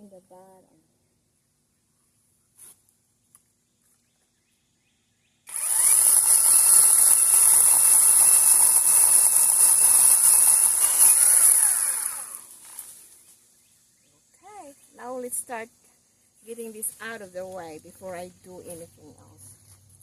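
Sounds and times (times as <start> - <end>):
chainsaw cutting tree trunk: 5.5 - 12.9.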